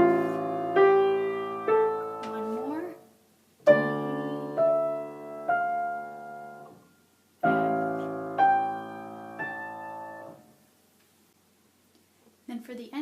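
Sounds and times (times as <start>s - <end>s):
slow piano notes and chords: 0.0s - 3.0s, 3.6s - 10.6s.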